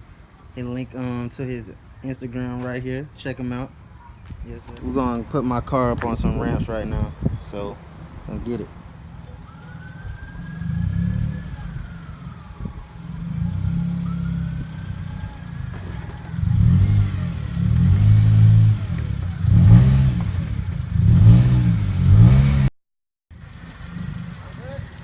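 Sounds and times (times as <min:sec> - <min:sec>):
car engine revving: 0:04.8 - 0:22.7, 0:23.3 - 0:25.0.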